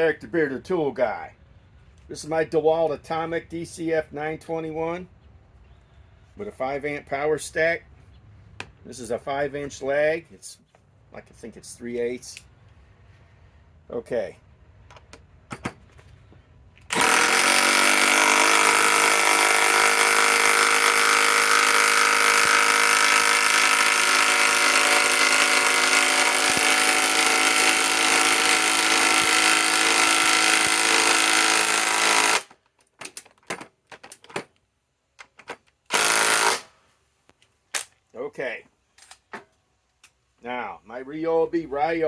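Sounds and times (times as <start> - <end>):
impact wrench hammering: 16.9 - 32.5, 35.5 - 36.7.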